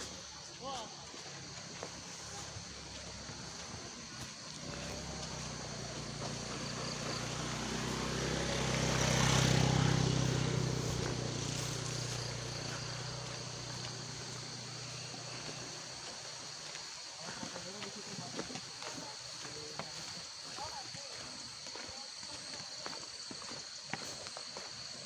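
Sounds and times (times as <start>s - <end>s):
vehicle engine passing by: 1.6s - 16.6s.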